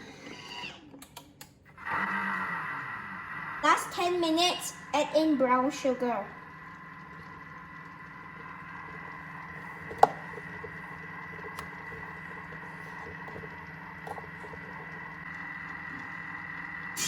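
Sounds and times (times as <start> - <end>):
kitchen appliance motor humming: 0.0 - 17.0.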